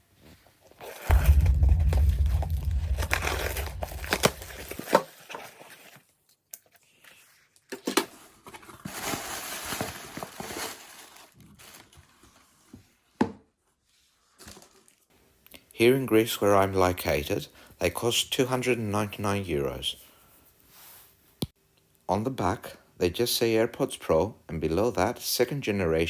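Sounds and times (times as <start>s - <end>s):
low hum: 1.1s - 4.8s
paper and plastic crinkling: 7.8s - 12.4s.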